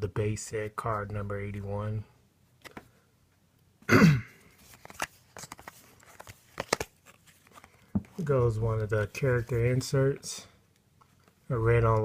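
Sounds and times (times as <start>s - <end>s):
cards clicking: 4.7s - 7.8s.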